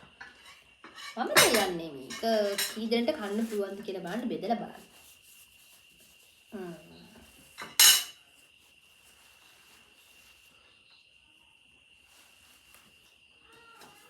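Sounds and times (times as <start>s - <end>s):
cutlery clinking on plate: 0.2s - 2.8s, 7.6s - 8.2s.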